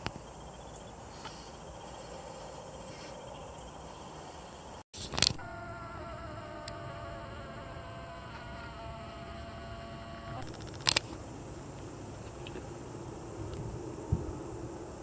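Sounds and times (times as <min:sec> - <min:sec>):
sharp clicks: 0:05.0 - 0:05.5, 0:10.4 - 0:12.8
buzzing hum: 0:05.0 - 0:15.0.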